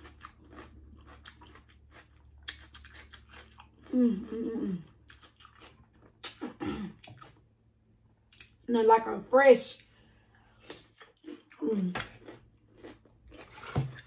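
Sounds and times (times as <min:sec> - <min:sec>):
chewing crisp cucumber: 0:00.0 - 0:07.4, 0:10.5 - 0:14.0.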